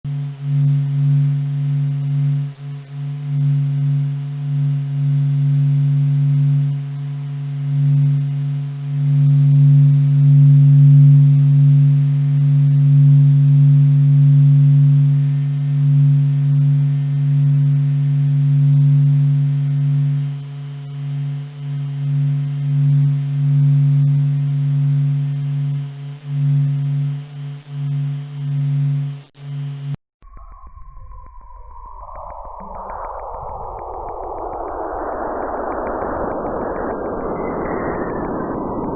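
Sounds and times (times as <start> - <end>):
eerie low droning hum: 30.2 - 38.9.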